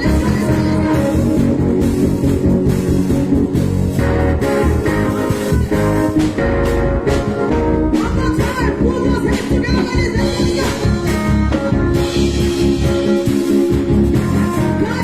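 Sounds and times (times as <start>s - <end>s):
person singing: 0.0s - 1.8s
music with steady beat: 0.0s - 15.0s.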